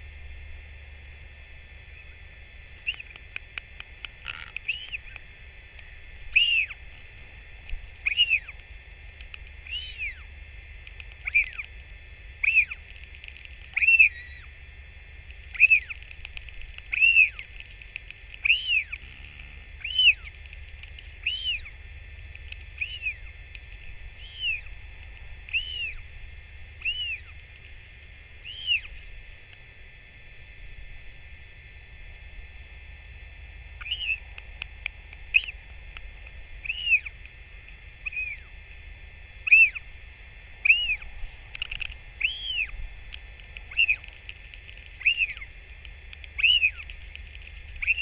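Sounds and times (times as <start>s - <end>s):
bird chirping: 2.8s - 3.2s, 4.2s - 5.2s, 6.3s - 6.8s, 8.0s - 8.6s, 9.6s - 10.3s, 11.2s - 11.7s, 12.4s - 12.8s, 13.7s - 14.6s, 15.5s - 16.0s, 16.9s - 17.5s, 18.4s - 20.4s, 21.2s - 21.8s, 22.7s - 23.4s, 24.1s - 24.8s, 25.4s - 26.1s, 26.8s - 27.4s, 28.4s - 29.0s, 33.8s - 34.3s, 35.3s - 35.6s, 36.6s - 37.2s, 38.0s - 38.5s, 39.4s - 39.9s, 40.6s - 42.8s, 43.6s - 44.1s, 45.0s - 45.5s, 46.2s - 46.9s, 47.8s - 48.0s.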